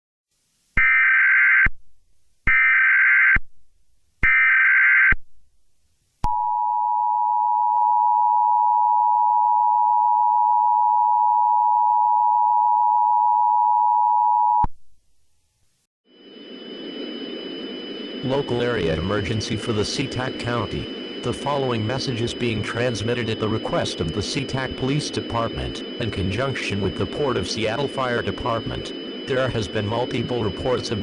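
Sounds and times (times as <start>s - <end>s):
digital data tone bursts: 16.1s - 31.0s
two-tone attention signal: 17.8s - 31.0s.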